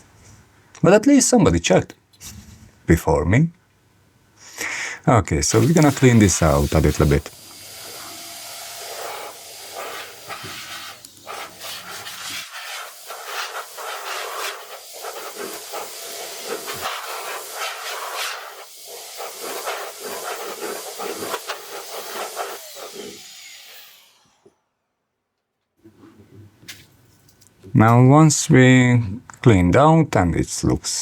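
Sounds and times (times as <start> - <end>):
compressed air hissing: 4.4 - 23.9.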